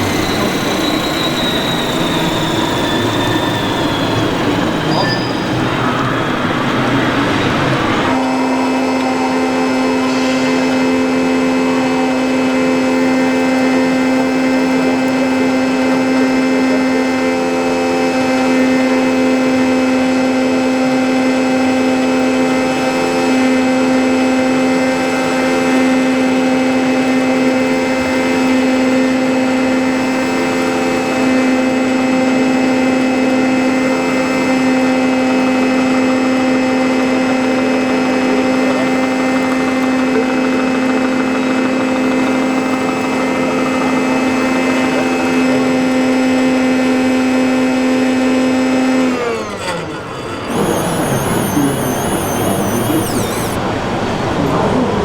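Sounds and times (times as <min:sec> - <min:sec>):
electric hum of toy machine: 0:12.8 - 0:55.0.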